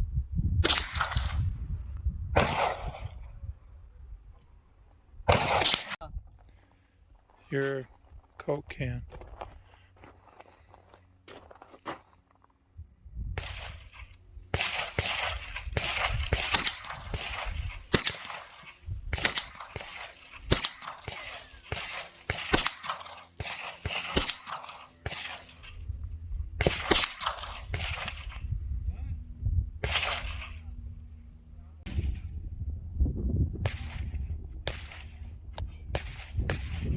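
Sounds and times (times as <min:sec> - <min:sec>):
wind rumbling on microphone: 0:00.0 - 0:06.5, 0:12.7 - 0:21.5, 0:25.6 - 0:36.9
rifle shots: 0:00.6 - 0:01.4, 0:02.4 - 0:03.2, 0:05.3 - 0:06.0, 0:13.4 - 0:25.9, 0:26.6 - 0:28.5, 0:29.8 - 0:30.7, 0:33.6 - 0:35.3, 0:35.9 - 0:36.9.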